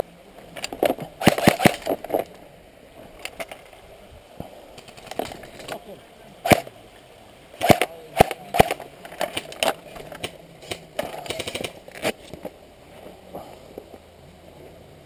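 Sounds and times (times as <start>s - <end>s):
airsoft rifle shots: 1.2s - 1.9s, 6.4s - 6.7s, 7.6s - 9.5s.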